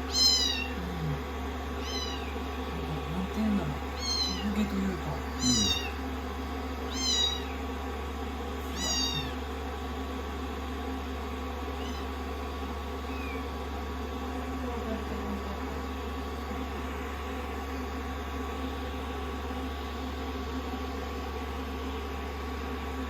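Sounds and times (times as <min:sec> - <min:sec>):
kittens meowing: 0:00.0 - 0:06.0, 0:06.9 - 0:07.6, 0:08.6 - 0:09.5, 0:11.7 - 0:12.2, 0:13.0 - 0:13.5
hair dryer running: 0:00.0 - 0:23.0.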